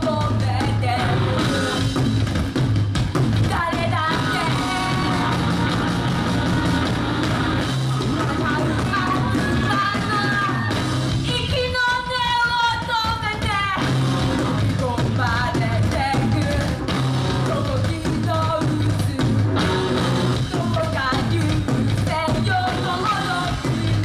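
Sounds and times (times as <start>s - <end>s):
singer: 0.0s - 1.8s, 3.4s - 24.0s
bass guitar: 0.0s - 24.0s
drum kit: 0.0s - 24.0s
electric guitar: 4.1s - 11.3s, 19.0s - 24.0s.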